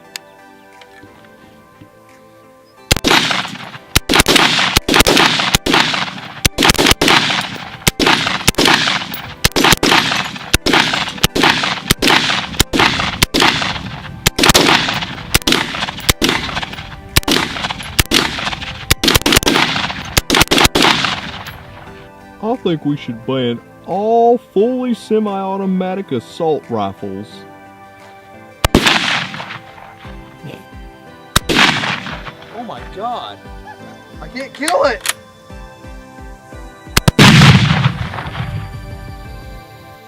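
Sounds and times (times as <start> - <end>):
rifle shots echoing: 2.9 - 22.1, 28.6 - 30.2, 31.4 - 32.6, 37.0 - 38.7.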